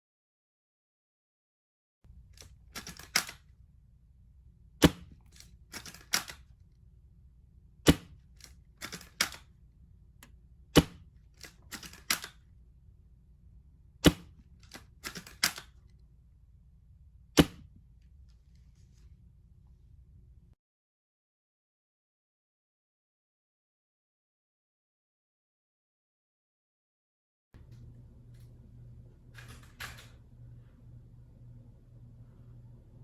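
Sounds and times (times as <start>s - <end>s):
rifle bolt clicking: 2.4s - 3.4s, 4.8s - 6.4s, 7.9s - 9.4s, 10.8s - 12.4s, 14.1s - 15.8s
airsoft rifle shots: 4.8s - 5.2s, 7.9s - 8.2s, 10.8s - 11.0s, 14.0s - 14.4s, 17.4s - 17.6s.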